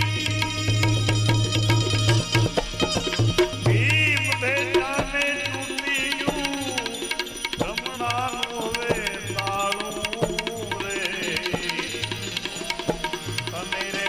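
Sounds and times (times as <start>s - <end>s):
tabla rhythm: 0.0s - 14.0s.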